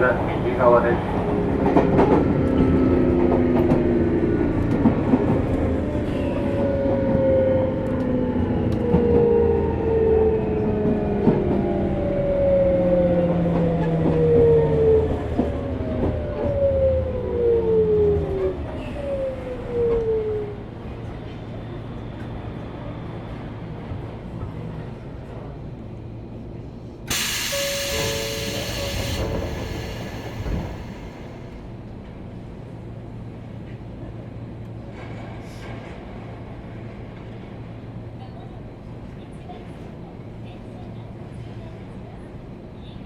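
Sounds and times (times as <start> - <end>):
train wheels rumbling: 26.6 - 32.5
train motors whining: 27.1 - 31.6.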